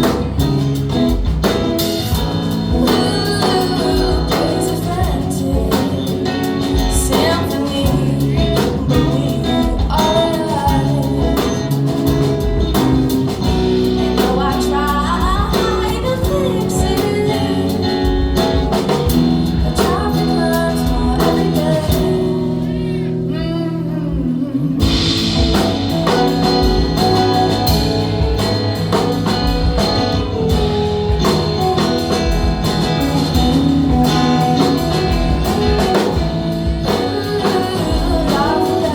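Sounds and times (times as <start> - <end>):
guitar: 0.0 - 38.9
person singing: 2.0 - 12.7, 14.0 - 38.9
steady beat: 24.8 - 38.9.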